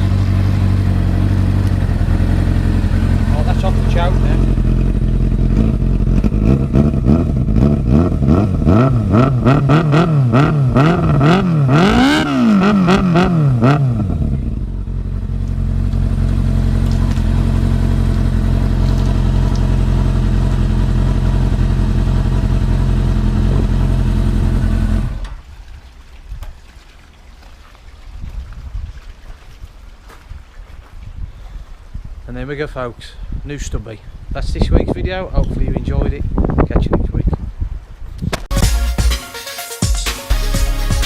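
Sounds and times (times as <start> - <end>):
motorcycle engine revving and idling: 0.0 - 25.4.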